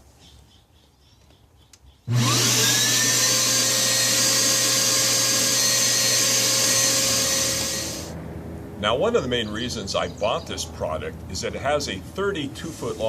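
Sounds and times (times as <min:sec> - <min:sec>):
shop vacuum motor whining: 0:02.1 - 0:08.1.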